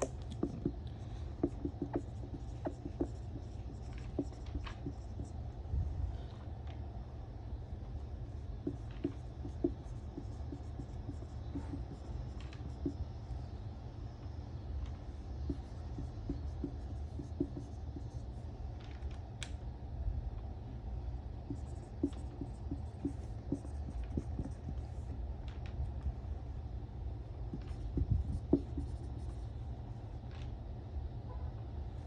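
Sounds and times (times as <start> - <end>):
pen scratching and tapping: 0.0 - 5.4, 8.3 - 13.1, 14.8 - 19.1, 21.4 - 25.8, 27.5 - 29.4
steady low hum: 0.0 - 32.0.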